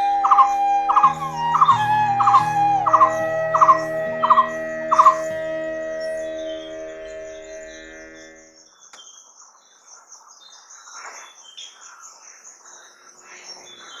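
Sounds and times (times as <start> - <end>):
birds chirping: 0.0 - 8.5
held musical chord: 0.0 - 8.6.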